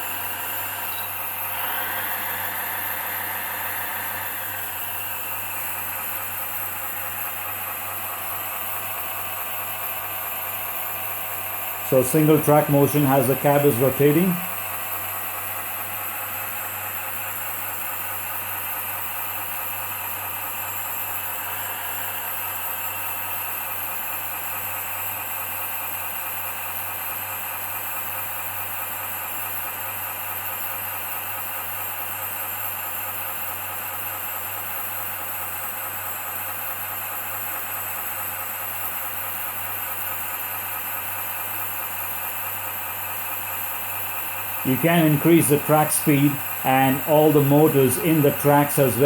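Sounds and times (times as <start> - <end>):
toy excavator motors whirring: 0.0 - 4.7
simulated engine sound: 0.0 - 7.2, 44.7 - 49.0.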